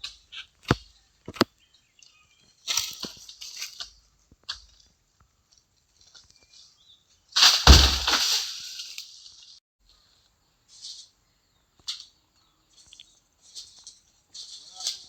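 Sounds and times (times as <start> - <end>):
palm section crashing to ground: 7.4 - 9.0.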